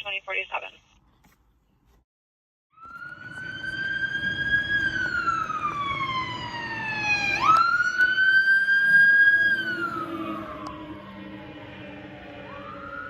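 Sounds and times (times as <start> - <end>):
fire engine siren wailing: 2.7 - 13.0.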